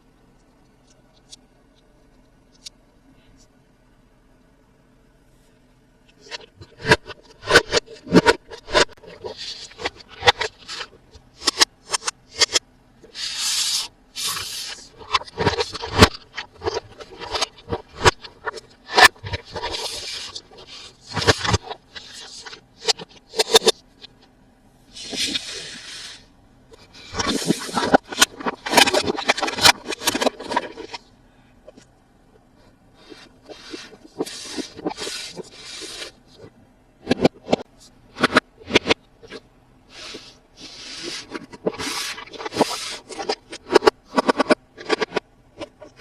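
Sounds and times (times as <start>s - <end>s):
scraping rustles of packaging: 33.0s - 46.0s.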